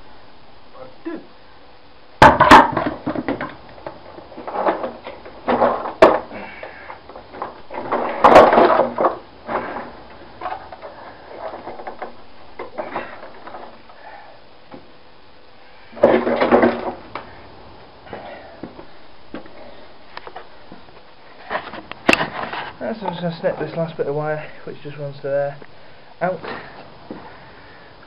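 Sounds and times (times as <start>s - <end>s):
plastic parts clattering: 2.3s - 6.4s, 7.1s - 13.8s.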